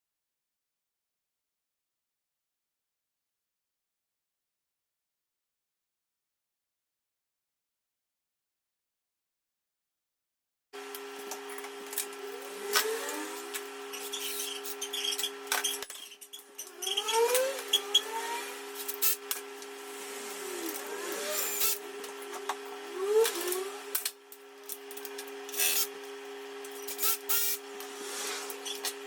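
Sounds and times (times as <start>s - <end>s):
steady hum: 10.8s - 15.6s, 16.3s - 29.0s
cordless drill whirring: 16.5s - 24.2s, 25.0s - 29.0s.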